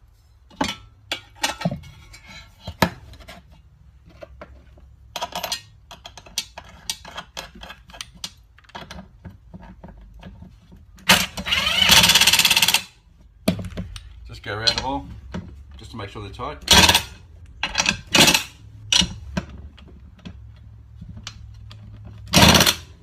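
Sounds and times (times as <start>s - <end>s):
metal parts and tools clinking: 5.1s - 9.1s, 16.7s - 19.9s, 21.2s - 23.0s.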